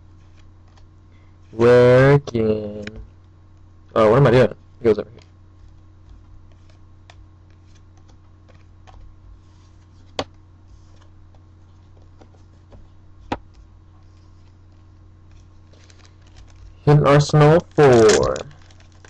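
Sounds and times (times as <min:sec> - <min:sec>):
cards tapping and clicking: 0:17.6 - 0:19.0.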